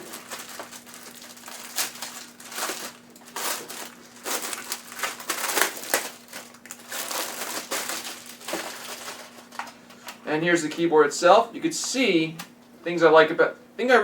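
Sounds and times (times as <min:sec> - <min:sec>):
wrapping crinkling and rustling: 0:00.0 - 0:10.2.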